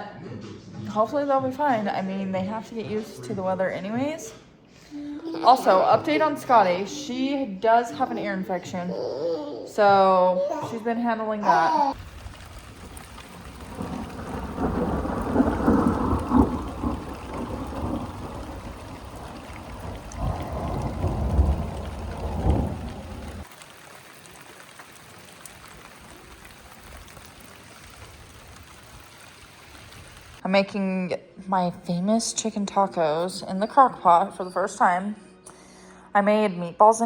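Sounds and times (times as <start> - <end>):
thunder rumbling: 12.0 - 23.6
heavy rain: 12.0 - 30.4.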